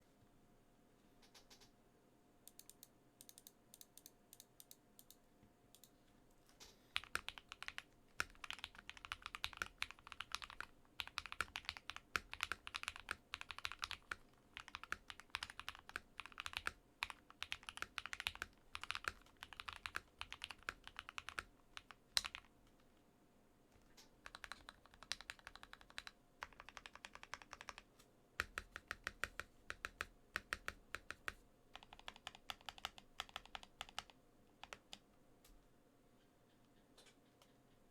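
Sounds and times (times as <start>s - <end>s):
mechanical keyboard typing: 7.0s - 22.5s, 24.2s - 35.0s.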